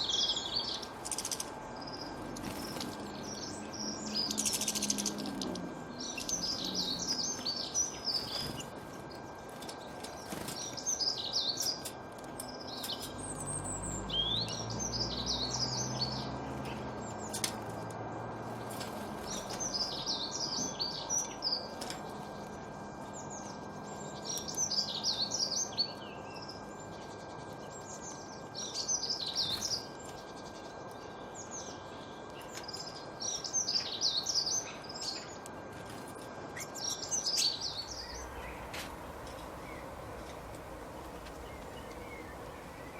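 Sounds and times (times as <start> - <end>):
songbird singing: 0.0 - 42.9
steady background hiss: 36.4 - 42.9.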